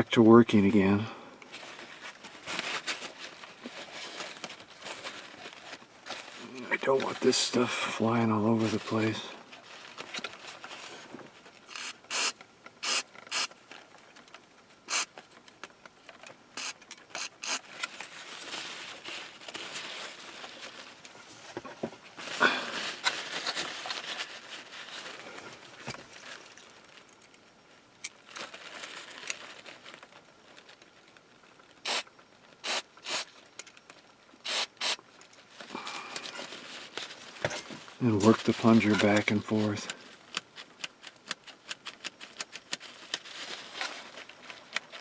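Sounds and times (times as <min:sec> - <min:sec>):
aerosol spray hissing: 0:11.7 - 0:13.5, 0:14.9 - 0:15.1, 0:16.6 - 0:17.6, 0:32.6 - 0:33.3, 0:34.5 - 0:35.0.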